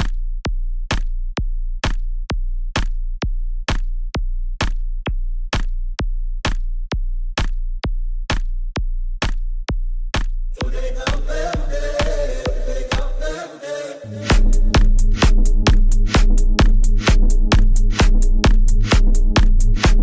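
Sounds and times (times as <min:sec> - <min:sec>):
drum machine kick: 0:00.0 - 0:13.2, 0:14.3 - 0:20.0
deep bass tone: 0:14.2 - 0:20.0.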